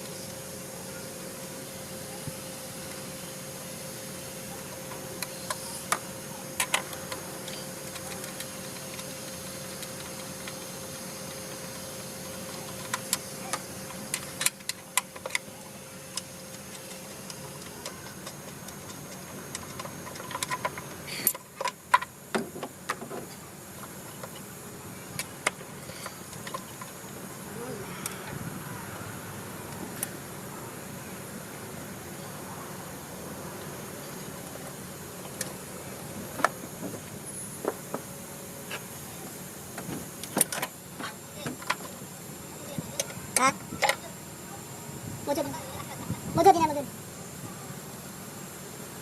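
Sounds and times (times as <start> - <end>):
background hum: 0.0 - 49.0.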